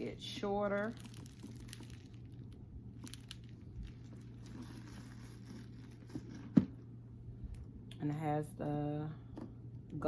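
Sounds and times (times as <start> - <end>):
low electrical hum: 0.0 - 10.0
leather handbag handling: 3.0 - 6.8.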